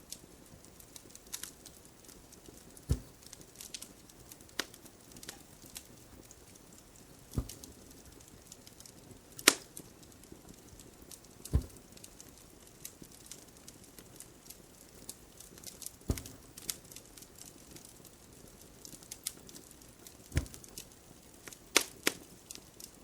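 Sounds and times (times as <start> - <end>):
faint fireplace crackling: 0.0 - 23.0
needle popping through canvas: 1.0 - 8.6, 10.7 - 12.4, 14.1 - 18.0, 18.8 - 22.9.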